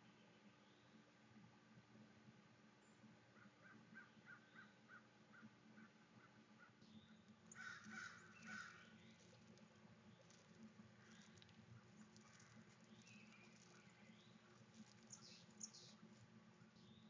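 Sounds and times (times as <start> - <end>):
harsh bird calls: 3.4 - 9.2
birds calling short notes: 6.9 - 9.2.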